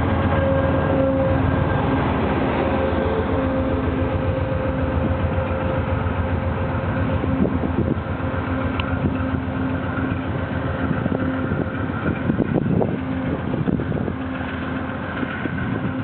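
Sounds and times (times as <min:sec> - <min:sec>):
diesel locomotive engine hum: 0:00.0 - 0:16.0
wheels clicking over rail joints: 0:04.9 - 0:16.0.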